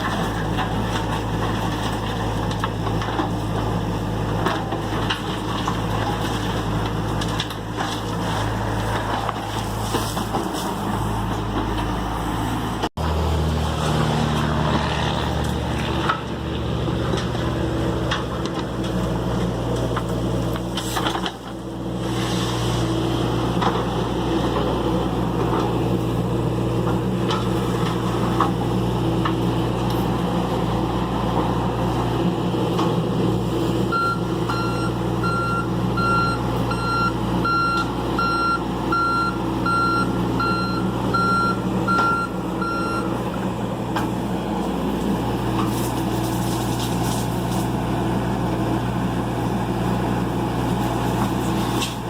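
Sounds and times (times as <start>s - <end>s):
diesel engine running: 0.0s - 52.0s
backup alarm beeping: 33.9s - 43.1s.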